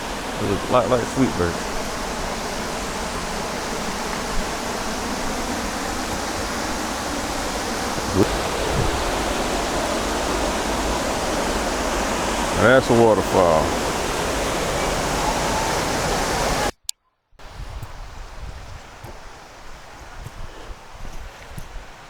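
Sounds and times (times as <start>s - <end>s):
waterfall rushing: 0.0s - 16.7s.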